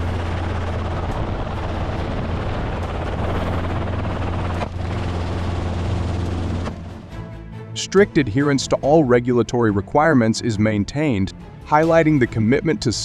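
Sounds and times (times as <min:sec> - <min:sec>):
helicopter engine and rotor: 0:00.0 - 0:09.0.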